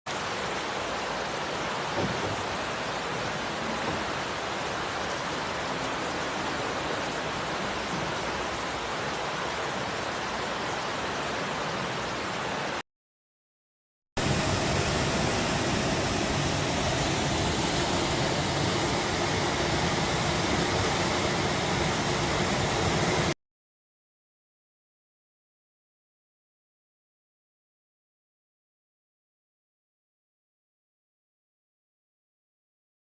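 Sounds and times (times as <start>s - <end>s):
water rushing: 0.1s - 12.8s, 14.2s - 23.4s.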